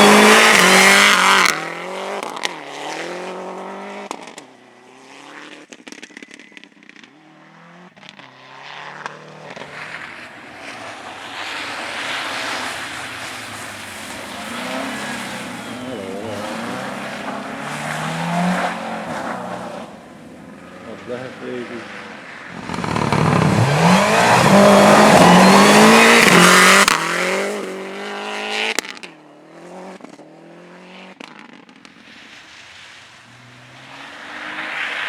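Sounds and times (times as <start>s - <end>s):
race car engine revving: 0.0s - 4.3s, 8.1s - 31.5s
tyre noise: 8.0s - 29.1s.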